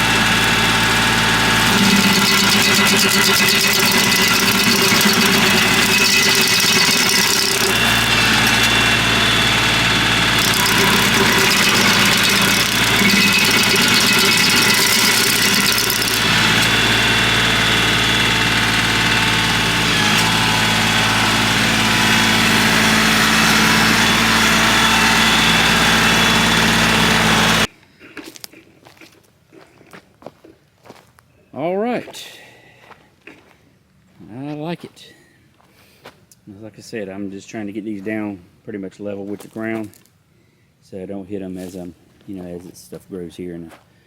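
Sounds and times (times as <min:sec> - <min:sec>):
stump grinder grinding: 0:00.0 - 0:27.7
tractor diesel engine running: 0:00.0 - 0:27.7.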